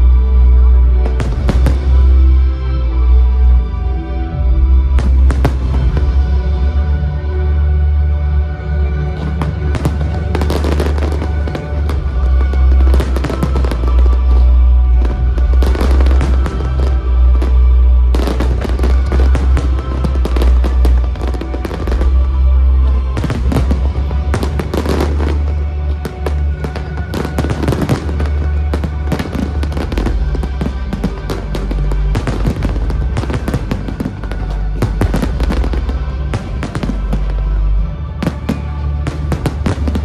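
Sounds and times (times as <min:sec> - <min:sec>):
fireworks bursting and crackling: 0:01.0 - 0:02.6, 0:04.9 - 0:06.5, 0:09.1 - 0:40.0
loud music with heavy bass: 0:14.8 - 0:40.0.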